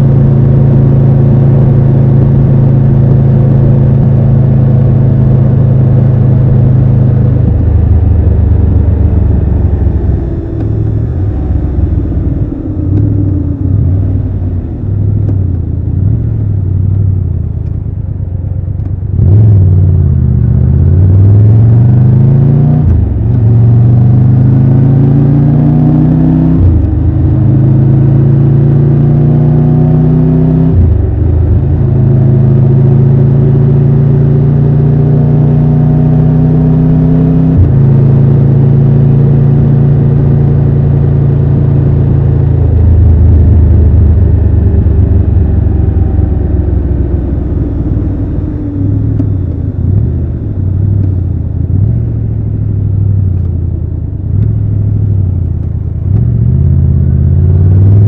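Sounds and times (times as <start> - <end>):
motorcycle engine accelerating: 0.0 - 58.0
gear upshifts: 6.6 - 17.9.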